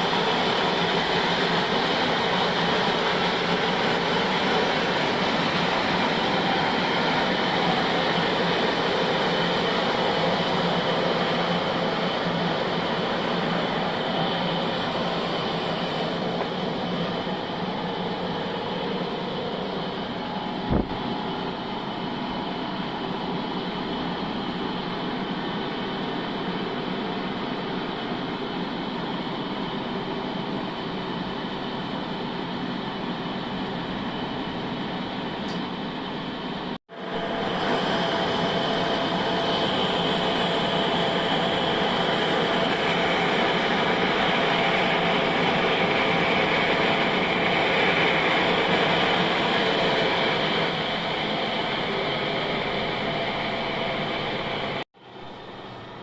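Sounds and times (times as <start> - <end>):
bandsaw sawmill running: 0.0 - 21.7, 36.9 - 54.8.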